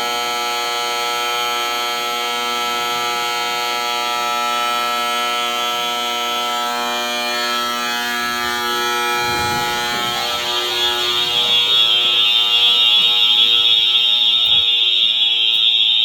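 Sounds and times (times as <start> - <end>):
fire alarm horn buzzing: 0.0 - 16.0
low rumble: 7.3 - 12.2.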